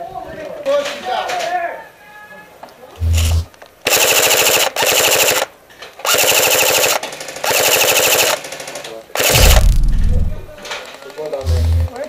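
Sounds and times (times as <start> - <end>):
airsoft rifle full-auto bursts: 3.2 - 10.6.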